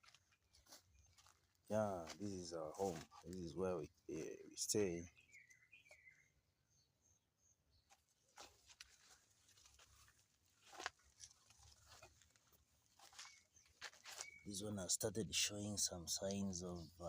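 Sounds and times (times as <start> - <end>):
faint short rustles and scuffs: 7.9 - 14.5.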